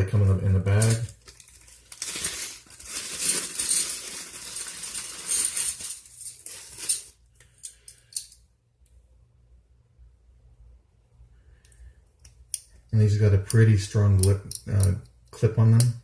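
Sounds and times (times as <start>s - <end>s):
plastic packaging rustling: 0.7s - 7.2s
metal carabiners clinking: 0.7s - 8.4s.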